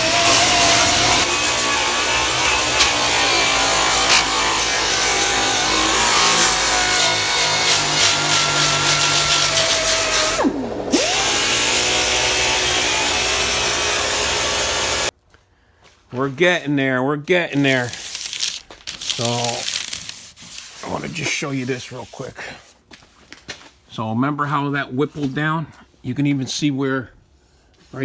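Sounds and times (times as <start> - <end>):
air tool scrubbing sheet metal: 0.0 - 15.1, 17.6 - 22.2.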